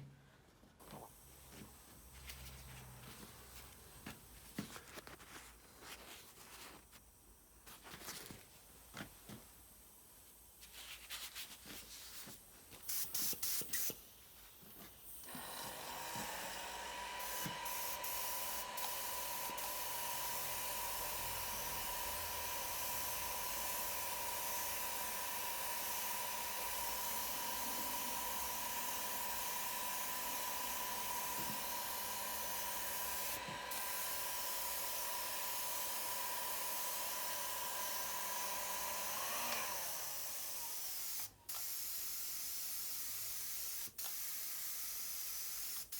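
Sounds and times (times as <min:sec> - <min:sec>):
compressed air hissing: 0:12.1 - 0:14.3, 0:14.9 - 0:40.0.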